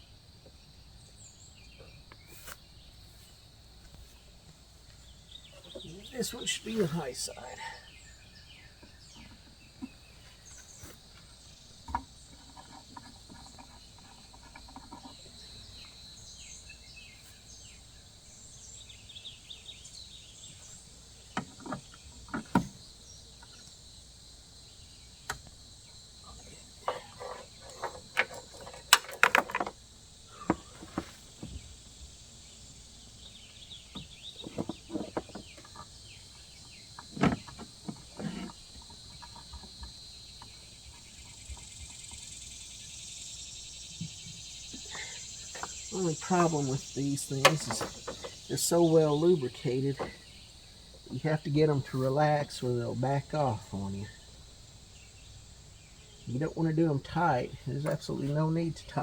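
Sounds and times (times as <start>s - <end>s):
insects droning: 0.0s - 59.0s
metal clicks and knocks: 26.8s - 29.8s, 47.4s - 48.4s.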